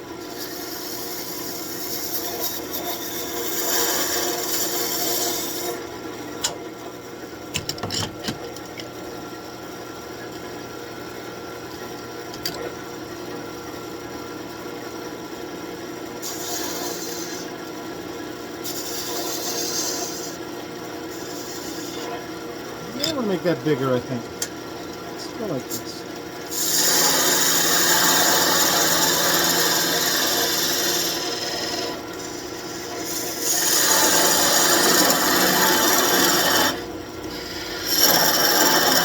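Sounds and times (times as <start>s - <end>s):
turning tool scraping wood: 0.4s - 5.8s, 16.2s - 17.5s, 18.6s - 20.4s, 21.1s - 22.2s, 25.3s - 39.0s
wood lathe humming: 16.2s - 20.5s, 21.1s - 22.1s, 22.8s - 39.0s.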